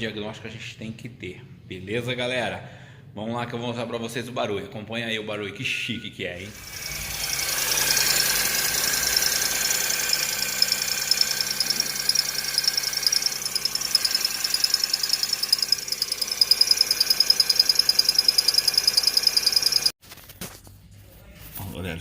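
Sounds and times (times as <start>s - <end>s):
drive belt squealing: 6.4s - 19.9s
car engine running: 6.5s - 19.9s.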